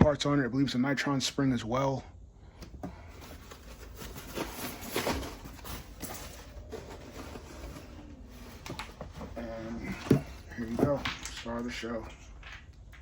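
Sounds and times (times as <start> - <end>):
packaging rustling and crinkling: 3.0 - 11.6.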